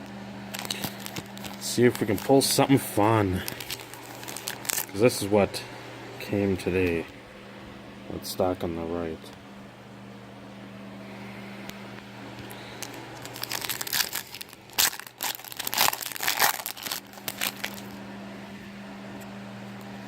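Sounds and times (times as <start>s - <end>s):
steady low hum: 0.0s - 20.0s
foil wrapper tearing and crinkling: 0.5s - 5.1s, 12.5s - 18.0s.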